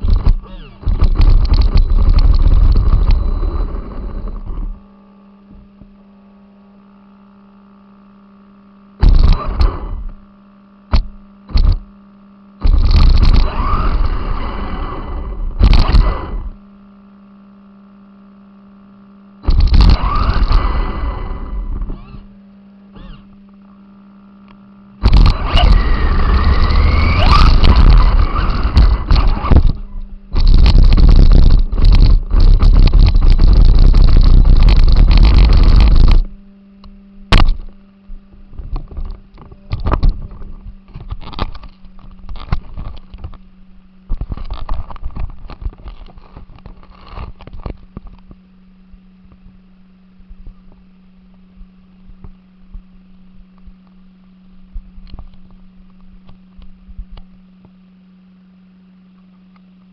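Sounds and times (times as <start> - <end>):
rc car rattling and rumbling: 0.0 - 4.8, 9.0 - 10.2, 12.6 - 16.6, 19.4 - 23.4, 25.0 - 36.4
electrical hum: 0.0 - 59.9
motor whine: 0.0 - 59.9.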